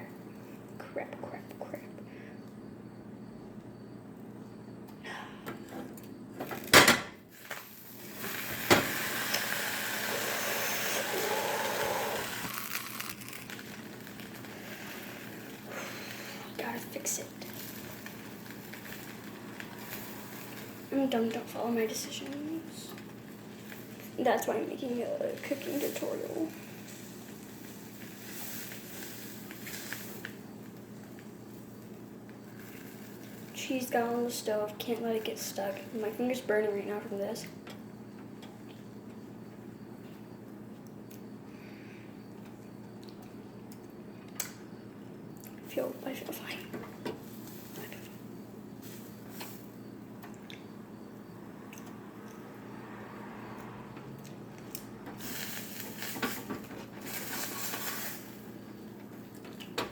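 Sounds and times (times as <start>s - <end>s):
sandwich sizzling in frying pan: 6.5s - 34.4s, 47.2s - 50.1s, 55.2s - 59.7s
steady hissing: 7.4s - 37.1s, 45.6s - 53.6s, 54.7s - 59.8s.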